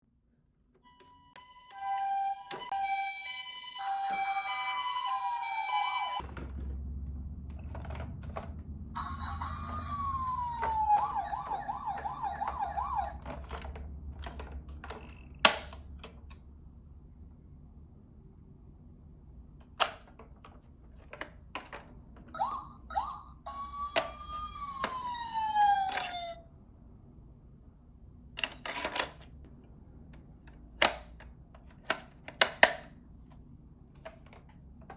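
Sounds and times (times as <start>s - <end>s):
toy ambulance sirens: 0.8s - 6.2s, 8.9s - 13.6s, 22.3s - 26.5s
low steady rumble: 6.2s - 28.5s.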